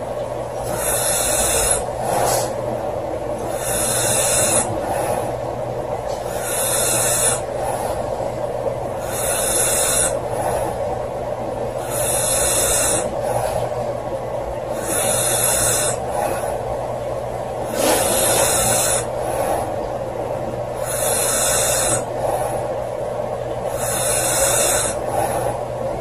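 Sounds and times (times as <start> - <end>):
woman snoring: 0.6 - 1.9, 3.5 - 4.7, 6.3 - 7.8, 9.0 - 10.4, 11.8 - 13.3, 14.7 - 16.5, 17.7 - 19.6, 20.8 - 22.3, 23.7 - 25.5.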